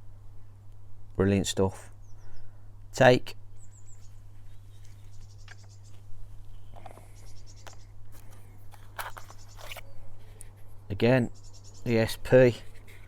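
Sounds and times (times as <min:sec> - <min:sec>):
low steady hum: 0:00.0 - 0:11.6
rustling: 0:06.8 - 0:10.4.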